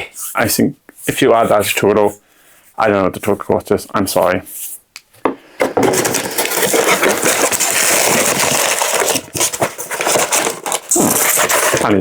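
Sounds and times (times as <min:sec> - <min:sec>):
packaging rustling and crackling: 0:05.6 - 0:12.0.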